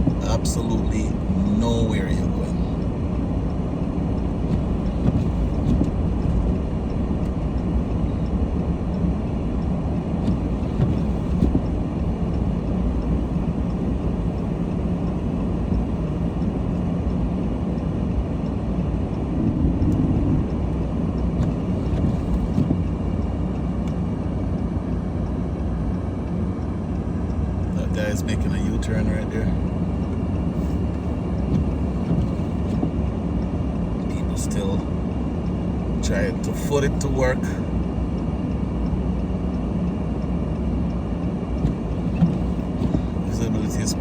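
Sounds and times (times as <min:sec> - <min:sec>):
car driving on snowy road: 0:00.0 - 0:44.0.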